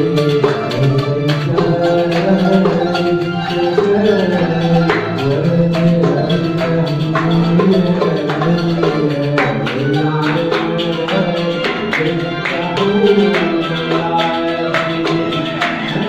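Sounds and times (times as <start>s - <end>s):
hand percussion beating: 0.0s - 16.0s
plucked qanun strings: 0.0s - 16.0s.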